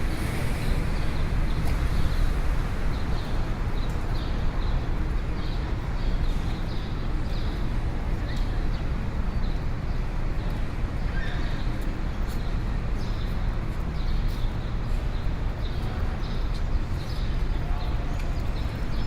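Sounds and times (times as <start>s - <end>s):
traffic and crowd rumble: 0.0s - 19.0s.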